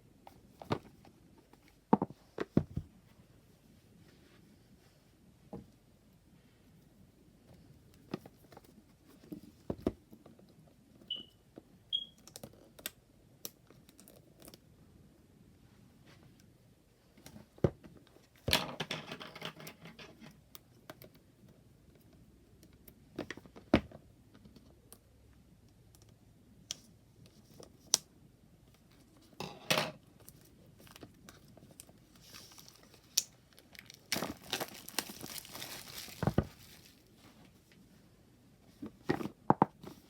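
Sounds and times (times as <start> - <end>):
packaging rustling: 31.8 - 37.1.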